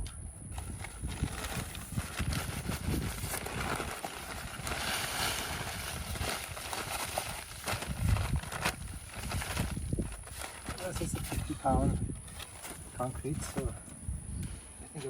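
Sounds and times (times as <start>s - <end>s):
concrete mix pouring: 1.2s - 8.6s.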